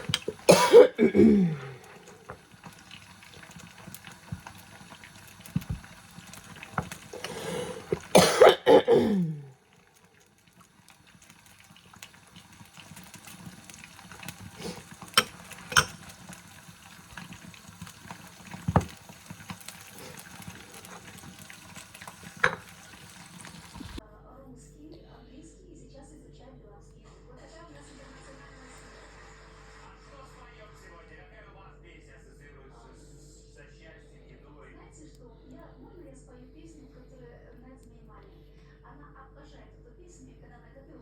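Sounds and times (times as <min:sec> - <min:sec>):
person coughing hard: 0:00.2 - 0:01.8, 0:08.1 - 0:09.5.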